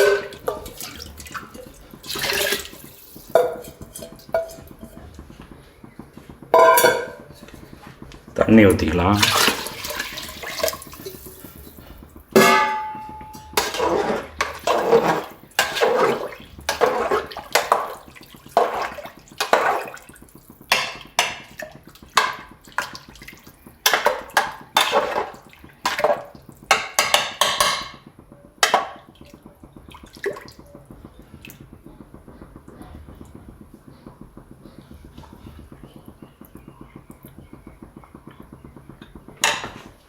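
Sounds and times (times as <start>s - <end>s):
water splashing in cooking pot: 0.0s - 7.8s, 8.5s - 40.0s
faint fast pulsing: 28.1s - 40.0s.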